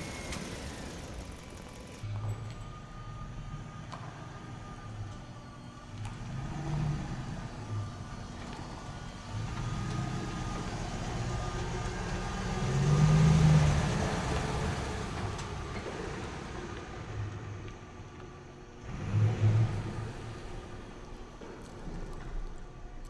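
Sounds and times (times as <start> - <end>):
engine-like rumble: 0.0 - 23.0.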